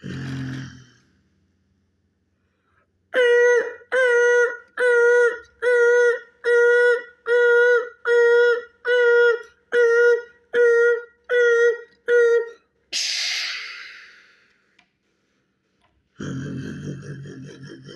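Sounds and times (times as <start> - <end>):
person imitating reversing alarm beeps: 3.2 - 14.2.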